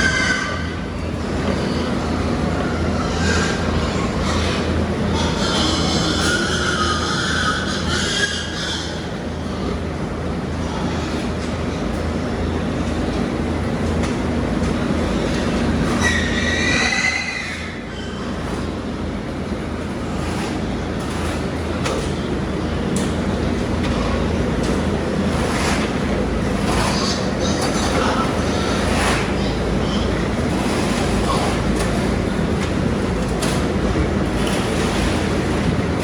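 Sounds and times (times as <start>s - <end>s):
pig squealing: 0.0s - 1.0s, 1.6s - 9.7s, 15.1s - 18.7s, 25.6s - 32.4s
steady mechanical hum: 0.0s - 36.0s.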